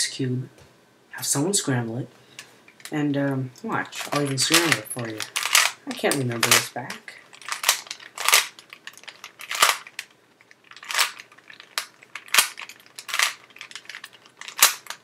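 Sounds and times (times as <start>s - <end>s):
plastic puzzle cube clacking: 3.9s - 15.0s.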